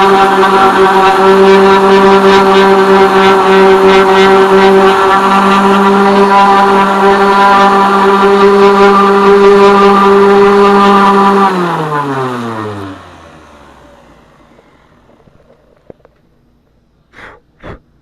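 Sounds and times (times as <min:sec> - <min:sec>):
electric sander running: 0:00.0 - 0:16.7.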